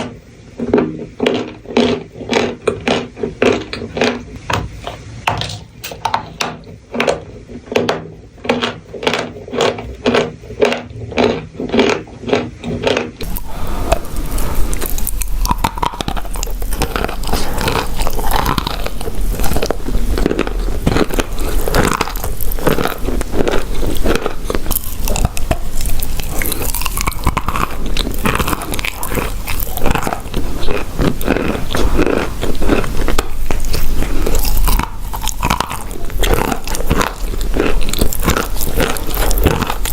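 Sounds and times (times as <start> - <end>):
chalk crunching while chewed: 0.7 - 4.5, 6.9 - 39.9.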